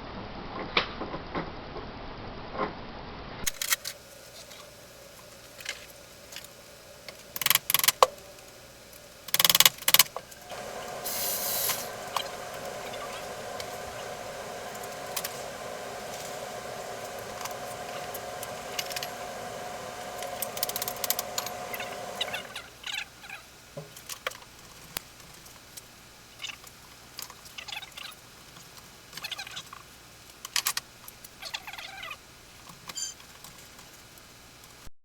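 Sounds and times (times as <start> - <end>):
hum with faint whine: 3.4 - 24.2.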